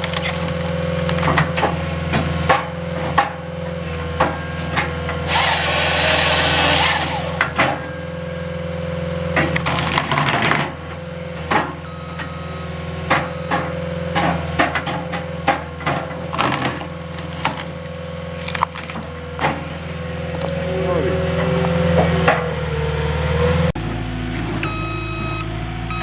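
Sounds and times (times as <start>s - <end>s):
wood pieces falling: 0.0s - 1.7s, 9.4s - 10.8s, 15.8s - 19.7s
wood splitting cracks: 0.0s - 1.8s, 9.4s - 10.8s, 15.4s - 19.6s
engine running: 0.0s - 26.0s.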